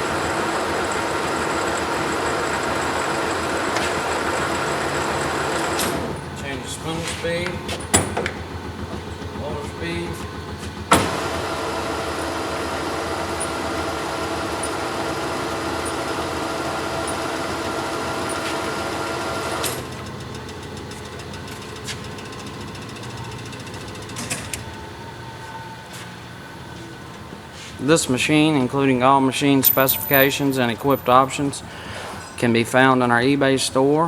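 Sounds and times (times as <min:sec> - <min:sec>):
lathe spindle clunk: 0:00.0 - 0:24.8
lathe gearing whine: 0:00.0 - 0:34.0.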